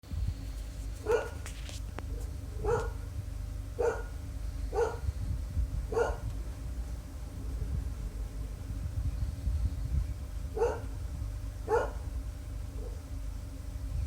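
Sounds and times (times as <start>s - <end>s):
steady low rumble: 0.0s - 14.0s
dog barking: 1.0s - 1.4s, 2.6s - 3.0s, 3.8s - 5.0s, 5.9s - 6.3s, 10.6s - 10.9s, 11.7s - 12.0s.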